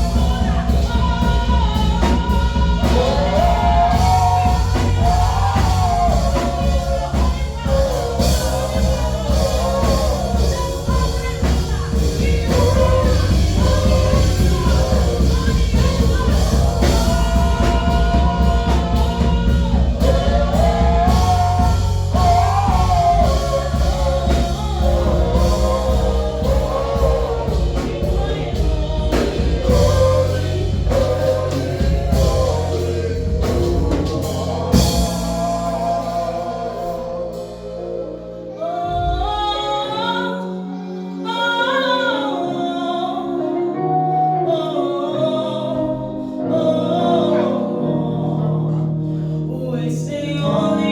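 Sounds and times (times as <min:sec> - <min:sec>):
bass guitar and drums: 0:00.0 - 0:37.7
choir singing gospel: 0:00.0 - 0:50.9.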